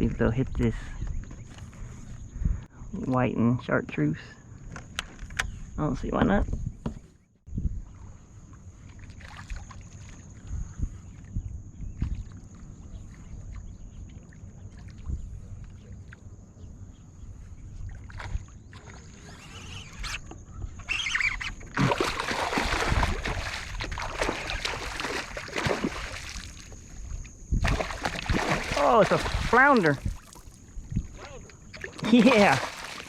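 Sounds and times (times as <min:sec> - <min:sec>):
light wind: 0:00.0 - 0:33.0
fish splashing in water: 0:21.7 - 0:26.7, 0:27.6 - 0:30.6, 0:31.8 - 0:33.0.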